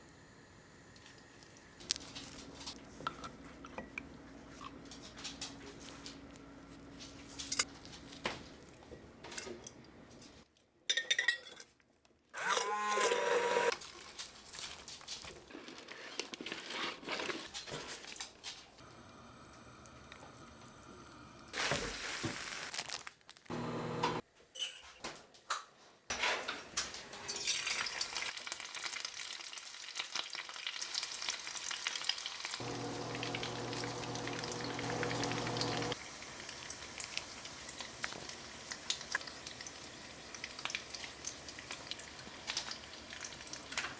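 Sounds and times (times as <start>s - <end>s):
kitchen clatter: 9.2s - 11.8s, 24.0s - 28.3s
hot oil sizzling: 19.0s - 22.8s, 27.3s - 43.9s
steady hum: 32.6s - 36.0s.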